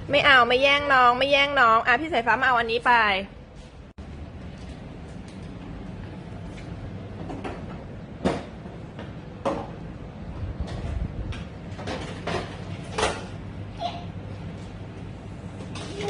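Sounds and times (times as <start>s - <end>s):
steady low hum: 0.0s - 16.0s.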